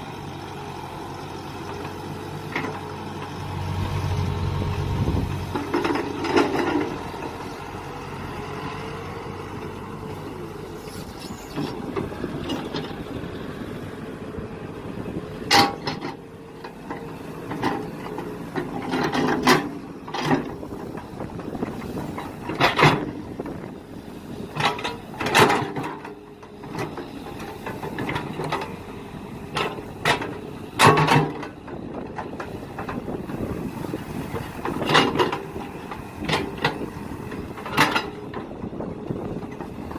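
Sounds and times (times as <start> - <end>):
excavator engine running: 0.0 - 39.9
digging knocks and clanks: 5.5 - 7.3, 15.5 - 21.0, 21.6 - 23.4, 24.5 - 28.8, 29.5 - 33.0, 34.3 - 38.5.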